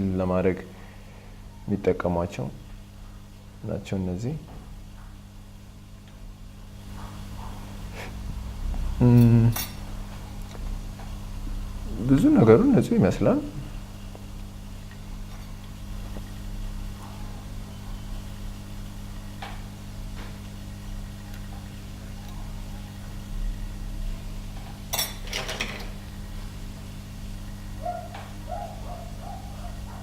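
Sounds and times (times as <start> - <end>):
low electrical hum: 0.0 - 30.0.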